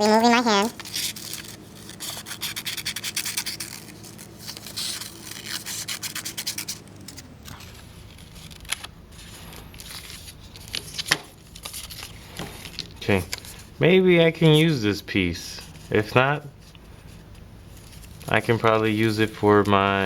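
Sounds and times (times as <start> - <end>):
scissors snipping paper: 0.0 - 8.9
paper rubbing: 0.0 - 13.7.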